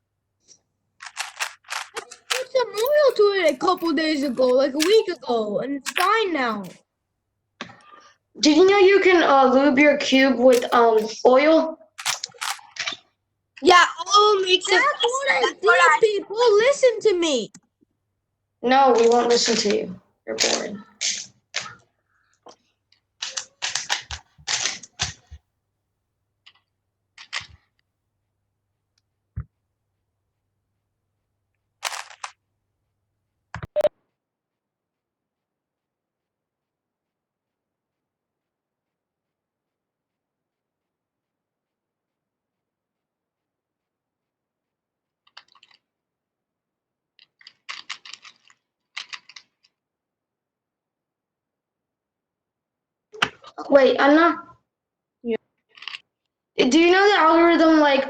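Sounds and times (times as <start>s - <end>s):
plastic cube turning clacks: 1.0s - 5.2s, 5.8s - 6.8s, 10.1s - 11.1s, 12.0s - 13.0s, 23.2s - 25.2s, 31.8s - 32.3s, 47.2s - 49.6s, 55.8s - 56.0s
rapid clicking: 1.0s - 5.2s.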